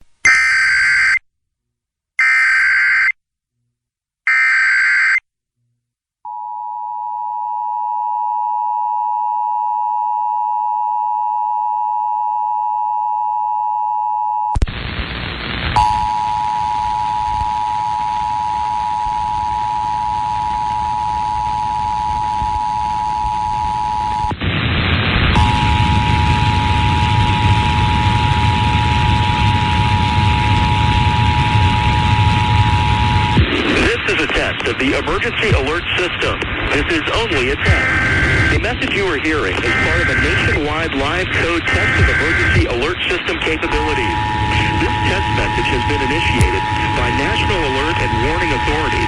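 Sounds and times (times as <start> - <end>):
static hiss: 30.8 - 49.0
warbling digital data bursts: 36.8 - 49.0
two-tone attention signal: 37.7 - 38.7, 39.6 - 42.9, 43.7 - 49.0.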